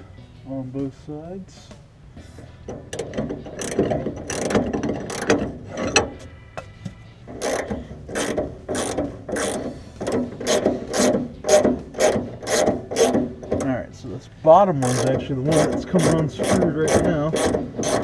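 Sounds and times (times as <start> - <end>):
socket ratchet clicking: 2.6 - 6.2, 7.3 - 13.6, 14.8 - 18.0.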